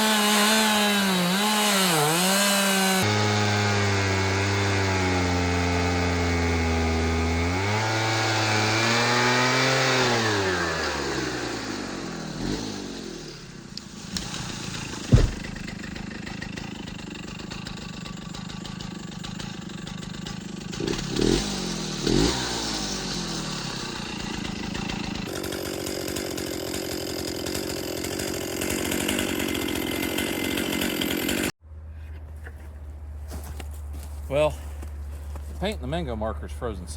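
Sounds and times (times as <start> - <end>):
chainsaw engine revving: 0.0 - 31.6
sharp knock: 14.9 - 15.7.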